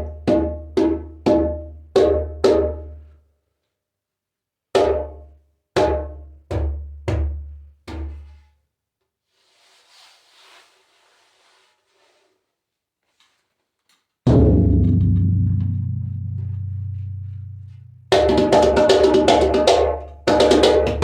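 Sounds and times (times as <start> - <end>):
hand drum hits: 14.3 - 21.0.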